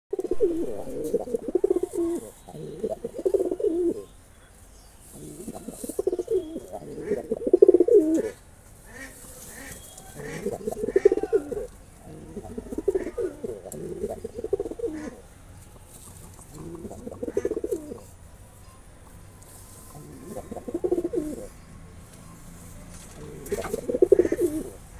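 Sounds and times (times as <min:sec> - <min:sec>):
pigeon cooing: 0:00.1 - 0:04.1, 0:05.2 - 0:08.4, 0:09.7 - 0:15.3, 0:16.1 - 0:18.2, 0:19.9 - 0:21.6, 0:23.2 - 0:24.9.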